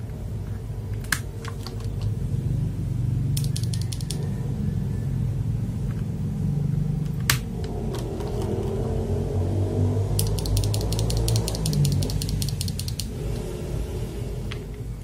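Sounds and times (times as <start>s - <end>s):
steady low hum: 0.0s - 15.0s
mechanical keyboard clicks: 3.4s - 4.2s, 10.2s - 13.2s.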